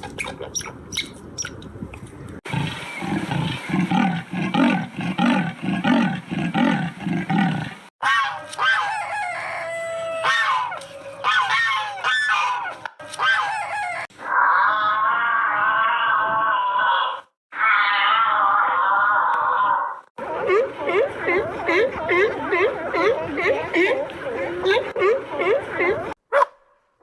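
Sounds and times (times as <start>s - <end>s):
rooster crowing: 8.1s - 11.5s.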